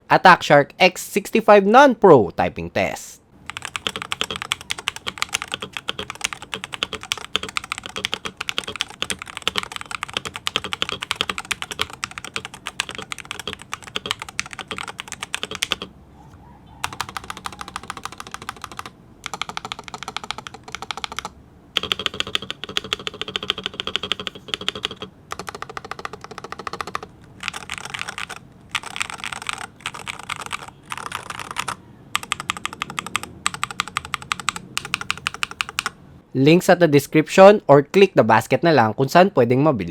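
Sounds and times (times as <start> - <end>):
keyboard keystroke clacks: 3.5 - 15.9, 16.8 - 35.9.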